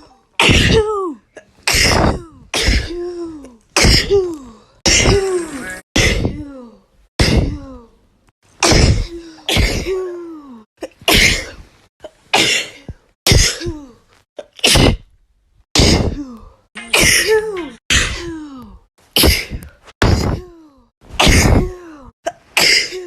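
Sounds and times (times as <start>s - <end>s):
person sneezing: 0.4s - 0.9s, 1.7s - 3.0s, 4.8s - 6.3s, 12.4s - 15.1s, 15.8s - 16.3s, 16.9s - 18.4s, 19.2s - 20.4s, 21.1s - 21.8s.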